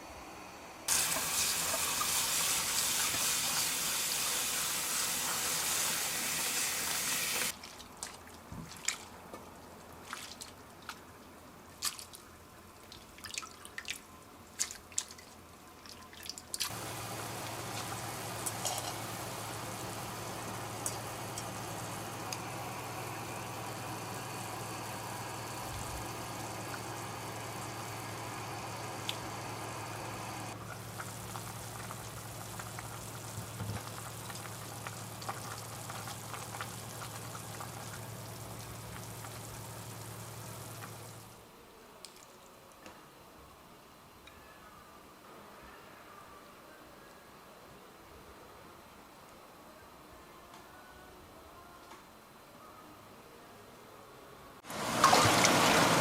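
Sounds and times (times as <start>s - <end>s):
water running hard: 0.9s - 7.5s, 16.7s - 41.3s, 54.7s - 56.0s
machine hum: 16.7s - 41.4s.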